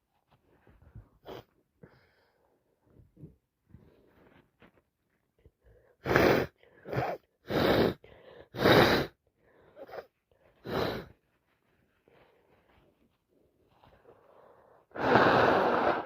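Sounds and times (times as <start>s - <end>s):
faint breathing: 7.6s - 13.1s, 13.7s - 16.0s.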